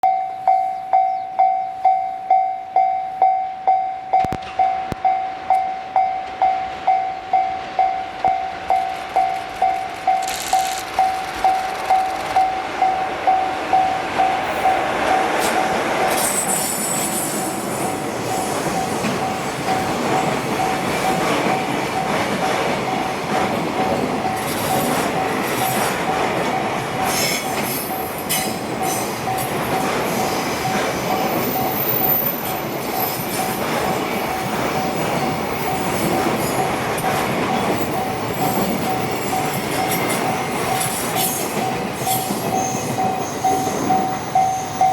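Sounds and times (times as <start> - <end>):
level crossing warning bell: 0.0 - 15.8, 17.4 - 44.9
freight train wheels rumbling: 4.1 - 44.9
train wheel squeals: 15.4 - 21.2, 24.2 - 44.9.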